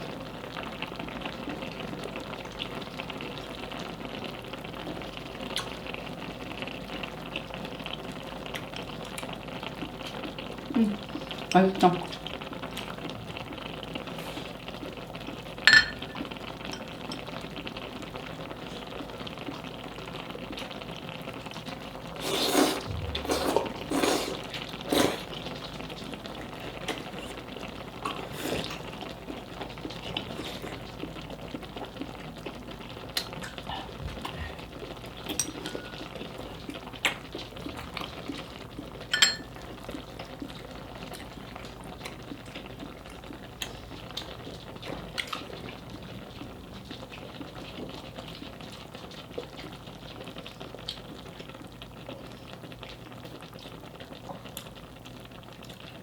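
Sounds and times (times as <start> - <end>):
broth simmering in a pan: 0.0 - 56.0
eating and scraping sounds: 12.0 - 14.9, 21.5 - 51.1.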